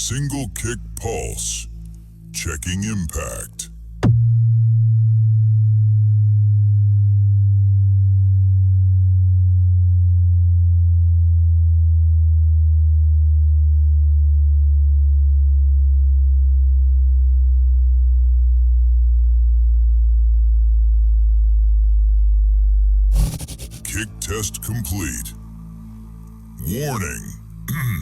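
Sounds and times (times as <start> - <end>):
low bass sine tone gliding down: 4.0 - 23.9.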